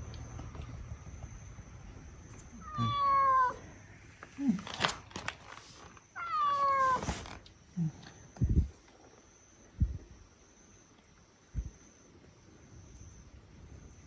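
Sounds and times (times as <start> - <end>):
cat meowing: 2.6 - 3.7, 6.2 - 7.2.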